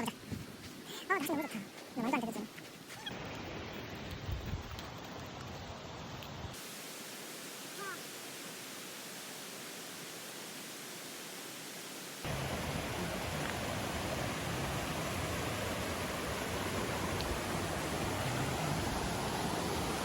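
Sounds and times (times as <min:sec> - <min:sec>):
mountain stream rushing: 0:02.8 - 0:20.0.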